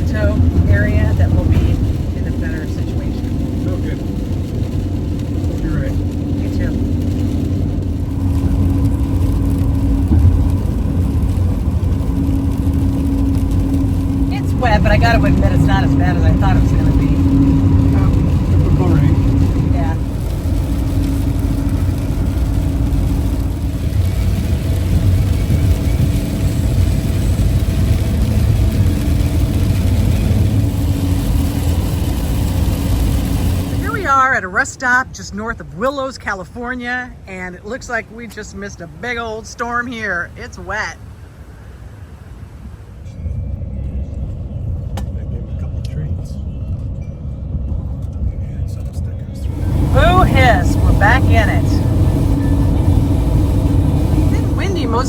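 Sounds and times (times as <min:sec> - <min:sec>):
constant droning hum: 0:00.0 - 0:55.0
vehicle road and engine rumble: 0:00.0 - 0:55.0
tyre hiss on wet road: 0:49.4 - 0:55.0.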